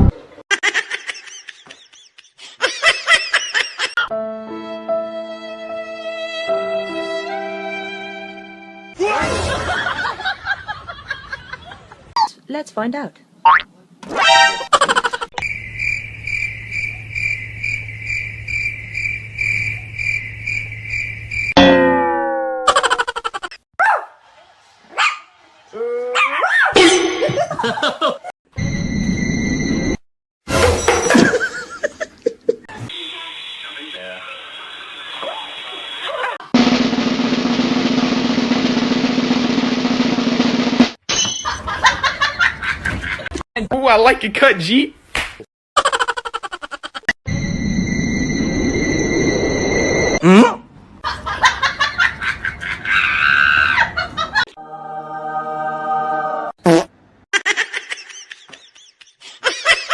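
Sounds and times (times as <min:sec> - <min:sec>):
cricket chirping: 0:15.4 - 0:21.6
snare drum roll: 0:36.6 - 0:41.0.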